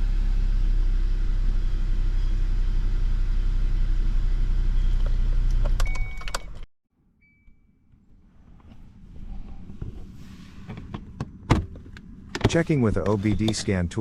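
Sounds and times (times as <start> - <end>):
car engine idling: 0.0 - 5.8.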